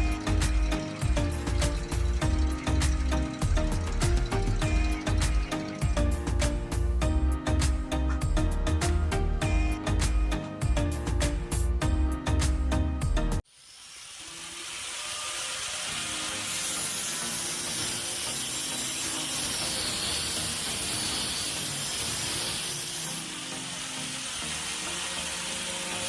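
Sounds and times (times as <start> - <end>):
power saw cutting wood: 0.0 - 8.1, 13.4 - 26.0.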